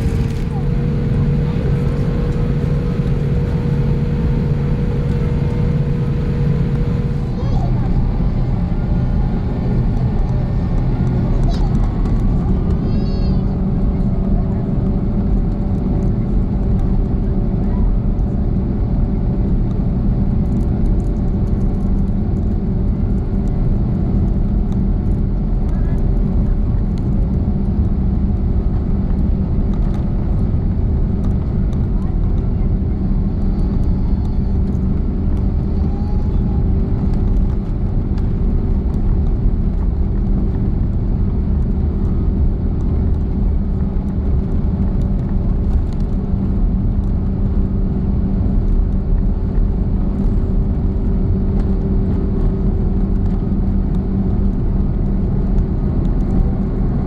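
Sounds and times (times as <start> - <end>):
low hums: 0.0 - 18.5, 20.1 - 57.0
airliner cabin engine rumble: 0.0 - 57.0.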